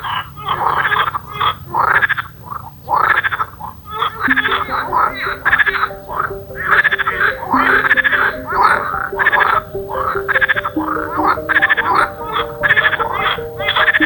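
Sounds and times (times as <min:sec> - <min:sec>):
frogs croaking: 0:00.0 - 0:14.0
slow piano melody: 0:04.3 - 0:14.0.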